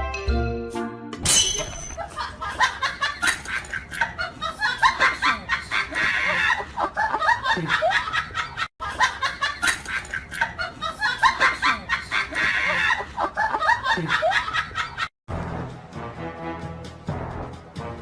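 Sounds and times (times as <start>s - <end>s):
people laughing hard: 2.0s - 15.1s.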